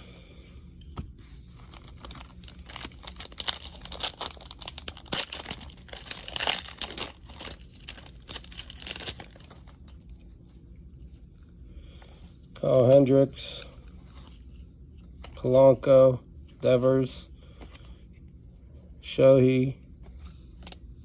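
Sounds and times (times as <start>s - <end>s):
foil wrapper tearing and crinkling: 1.6s - 10.0s.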